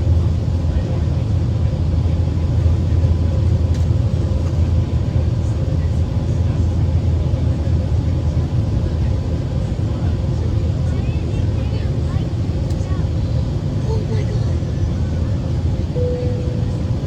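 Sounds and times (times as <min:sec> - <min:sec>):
jet engines rumbling: 0:00.0 - 0:17.0
air rushing along fuselage: 0:12.3 - 0:17.0.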